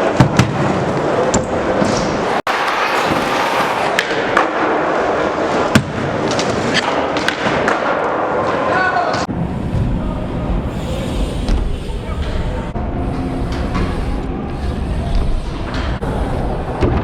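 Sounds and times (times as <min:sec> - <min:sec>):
bike wheels rolling on ramps: 0:00.5 - 0:05.6, 0:09.4 - 0:17.0.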